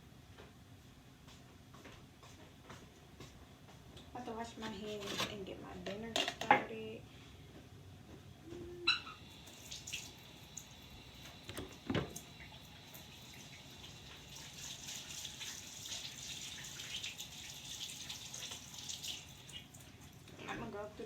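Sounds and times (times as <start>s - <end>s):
tap running at sink: 9.3s - 20.4s.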